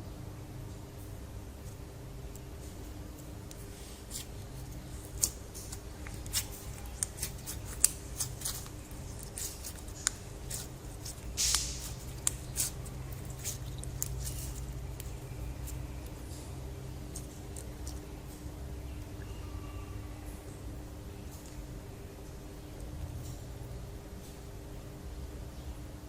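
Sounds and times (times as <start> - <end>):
slime squelch: 2.8 - 19.8.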